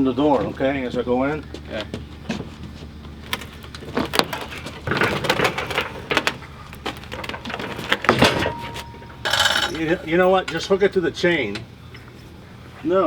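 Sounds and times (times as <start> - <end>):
metal clanks and scrapes: 2.4 - 12.5.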